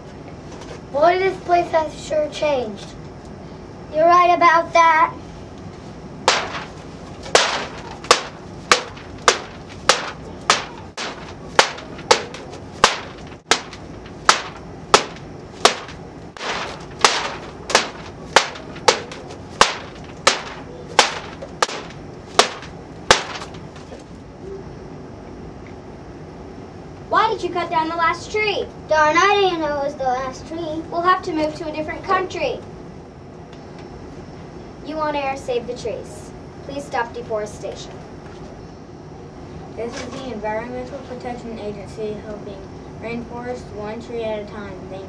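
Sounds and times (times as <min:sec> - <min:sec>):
axe chopping tree: 0:06.3 - 0:23.6.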